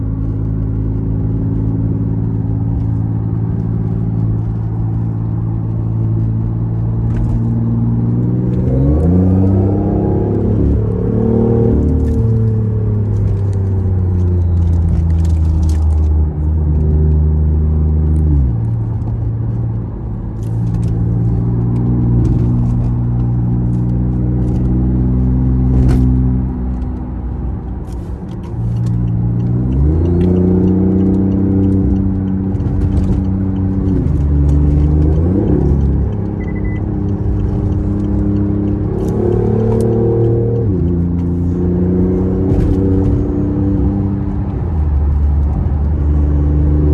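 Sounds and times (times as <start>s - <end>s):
car engine accelerating: 0.0s - 46.9s.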